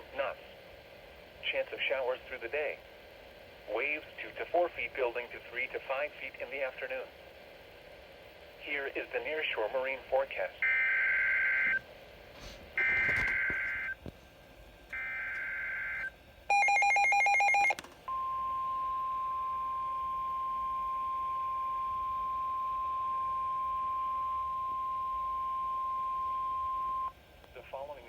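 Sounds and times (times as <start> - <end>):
steady warning alarm tone: 10.6 - 11.8, 12.8 - 14.0, 14.9 - 27.1
rapid beeping: 12.8 - 14.0.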